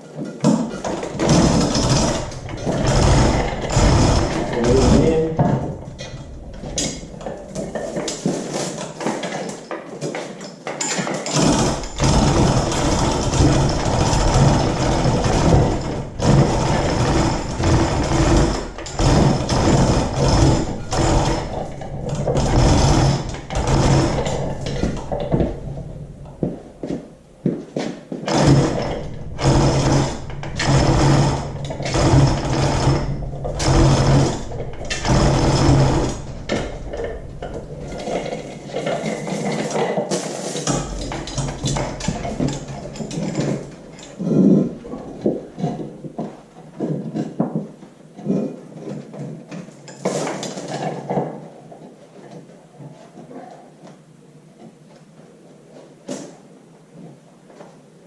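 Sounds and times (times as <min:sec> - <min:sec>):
motor-driven tool running in bursts: 0:28.3 - 0:38.3.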